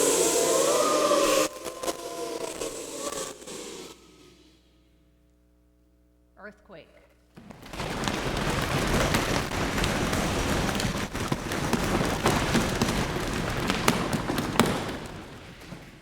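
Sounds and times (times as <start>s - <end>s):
many small knocks: 7.4s - 16.0s.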